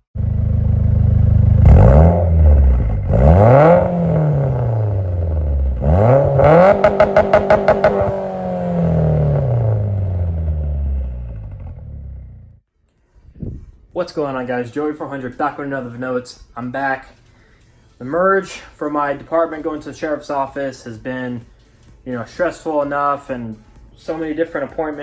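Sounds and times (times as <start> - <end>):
car engine revving: 0.2 - 12.6
engine stuttering: 0.2 - 12.6.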